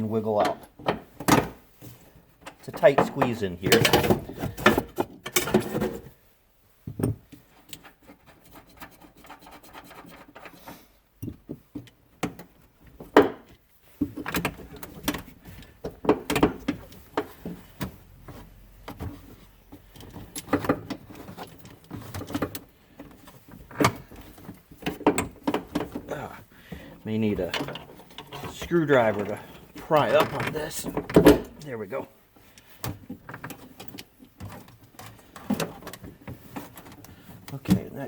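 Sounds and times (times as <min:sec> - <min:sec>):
metal cables clinking and rattling: 0:14.0 - 0:38.0.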